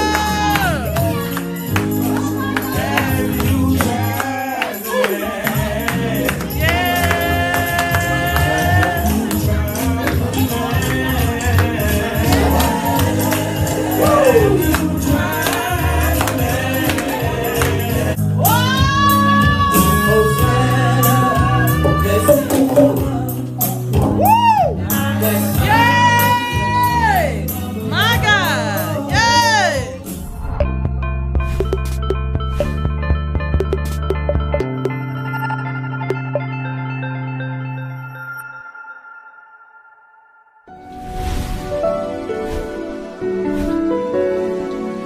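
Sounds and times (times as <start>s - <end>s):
person singing: 0.0s - 30.3s
gospel church music: 0.0s - 30.6s
person singing long high notes: 13.8s - 15.4s
low backing chords: 26.7s - 38.4s.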